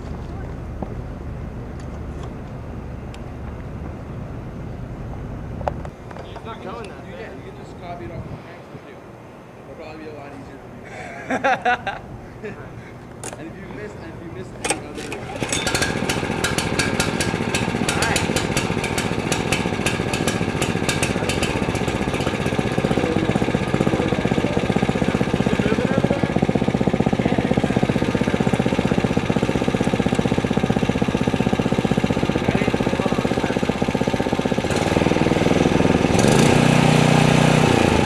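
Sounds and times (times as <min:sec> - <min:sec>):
gasoline engine running: 0:14.4 - 0:38.0.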